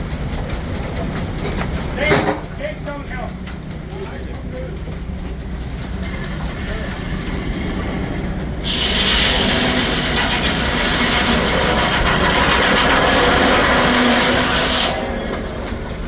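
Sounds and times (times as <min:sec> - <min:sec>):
mill running: 0:00.0 - 0:16.0
circular saw cutting log: 0:05.9 - 0:15.7.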